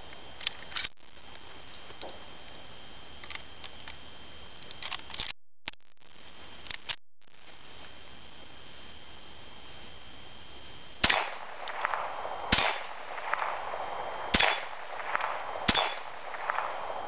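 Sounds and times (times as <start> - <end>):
steady background hiss: 7.4 - 17.0
pistol reloading clicks: 11.0 - 13.6.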